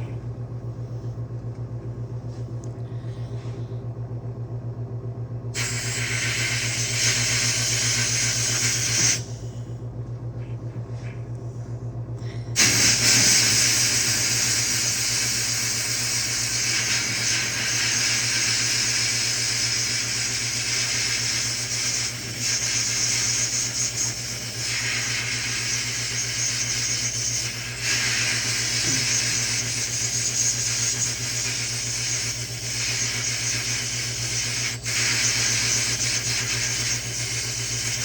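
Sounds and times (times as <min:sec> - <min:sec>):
air compressor humming: 0:00.0 - 0:04.0, 0:05.4 - 0:38.0
sandblaster air hissing: 0:05.6 - 0:09.5, 0:12.6 - 0:38.0.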